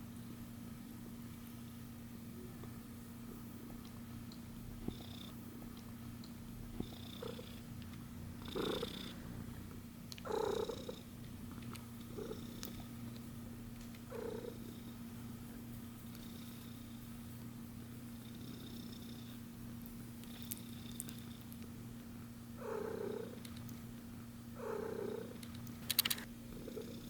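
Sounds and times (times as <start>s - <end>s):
cat purring: 2.3s - 17.1s, 17.8s - 19.4s, 22.6s - 23.7s, 24.6s - 27.0s.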